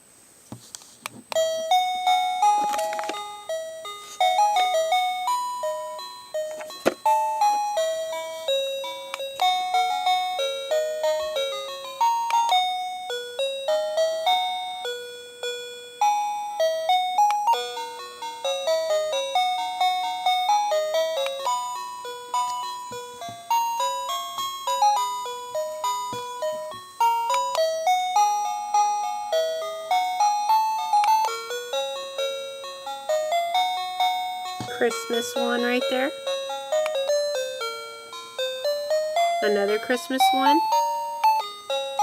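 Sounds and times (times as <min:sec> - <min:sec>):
doorbell chime melody: 0:01.4 - 0:42.0.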